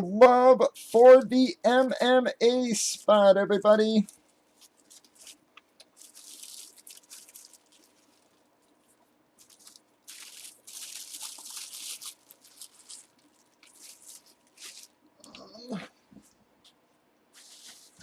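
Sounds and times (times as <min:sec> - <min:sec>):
plastic wrapping crinkling: 0:04.0 - 0:15.3, 0:17.3 - 0:18.0.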